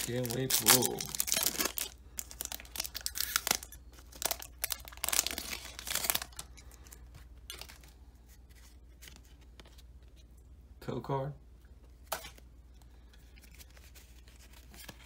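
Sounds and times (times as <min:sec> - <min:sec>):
foil wrapper tearing and crinkling: 0:00.0 - 0:06.9.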